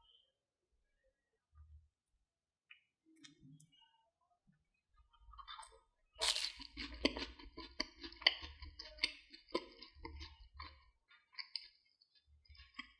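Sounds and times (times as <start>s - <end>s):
crispy food crunching under knife: 6.2s - 11.8s, 12.5s - 12.9s.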